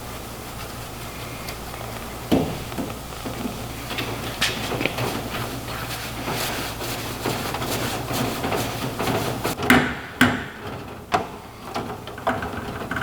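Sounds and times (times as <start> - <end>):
clay bar scrubbing on metal: 1.1 - 9.6
sharp knocks and clunks: 2.3 - 5.1, 8.4 - 13.0.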